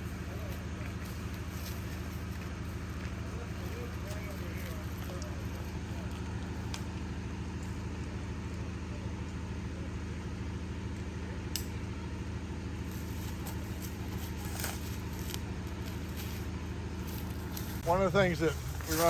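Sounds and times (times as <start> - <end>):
engine idling: 0.0 - 19.0.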